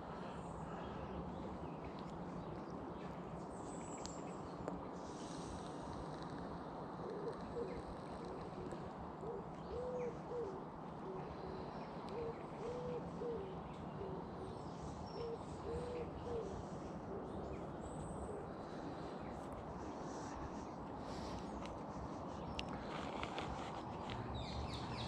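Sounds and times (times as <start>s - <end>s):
pigeon cooing: 7.0s - 17.5s.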